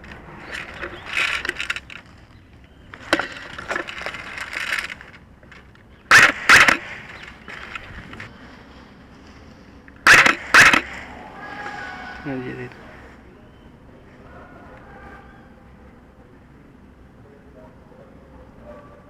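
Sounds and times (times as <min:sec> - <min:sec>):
twigs and brush crackling: 0:00.0 - 0:16.0
short sharp bursts: 0:06.0 - 0:08.3, 0:10.0 - 0:13.2.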